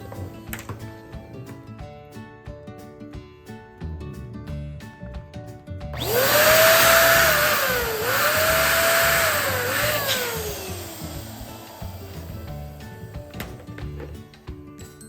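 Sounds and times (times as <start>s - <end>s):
background music: 0.0s - 15.0s
balloon inflator motor whine: 6.0s - 13.2s.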